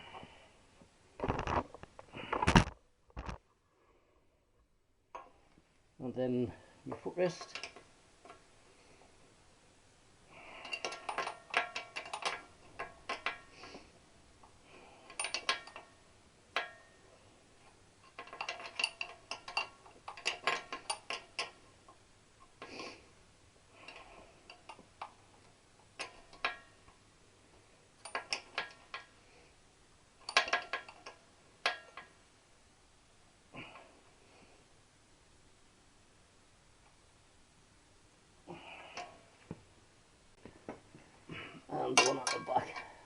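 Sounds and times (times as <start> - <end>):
metal tools clinking: 30.2 - 32.0, 41.8 - 43.0.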